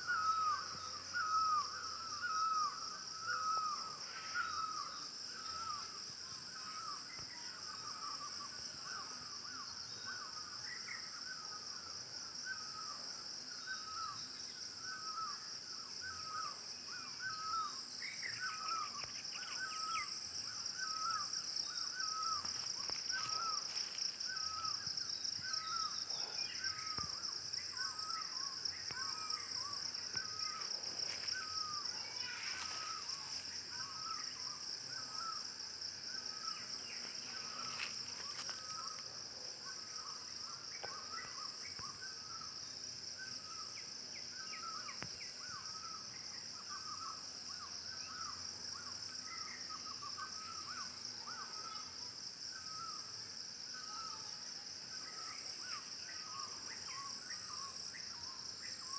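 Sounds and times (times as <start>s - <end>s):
high insect drone: 0.0s - 58.9s.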